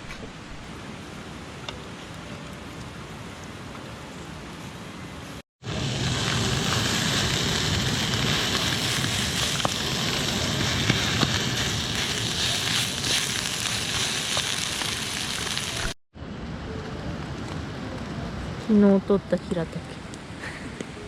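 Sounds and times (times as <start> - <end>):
food sizzling in a pan: 5.6 - 16.0.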